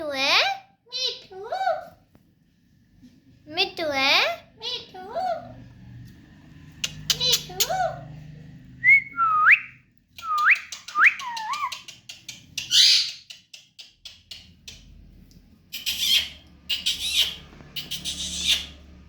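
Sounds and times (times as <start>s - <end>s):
parrot squawking: 12.6s - 13.3s, 15.7s - 19.0s
parrot whistled calls: 12.7s - 13.3s.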